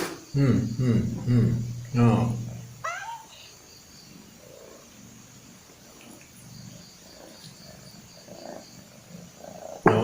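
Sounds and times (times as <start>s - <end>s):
cat purring: 2.1s - 10.0s.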